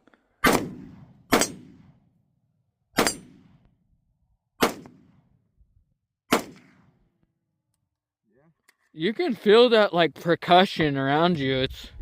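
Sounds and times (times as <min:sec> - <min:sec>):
rifle shots: 0:00.4 - 0:02.0, 0:03.0 - 0:03.6, 0:04.6 - 0:05.3, 0:06.3 - 0:07.0.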